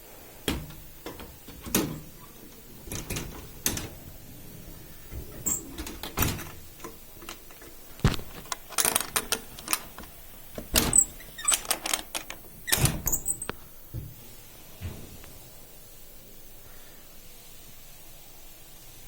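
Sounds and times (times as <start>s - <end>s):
handling clicks and knocks: 0.4s - 14.2s.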